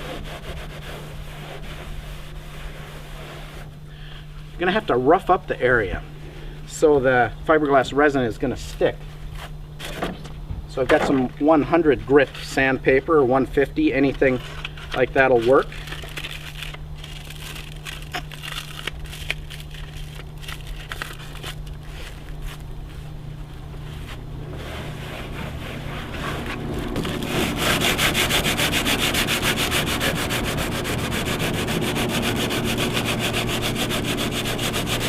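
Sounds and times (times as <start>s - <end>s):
sandpaper sanding a hull: 0.0s - 3.8s, 14.2s - 23.0s, 23.8s - 35.0s.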